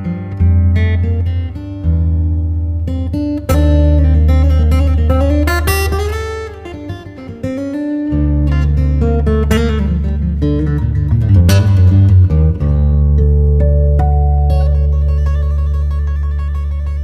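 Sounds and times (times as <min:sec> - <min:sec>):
acoustic guitar song: 0:00.0 - 0:17.0
bass line: 0:08.2 - 0:17.0.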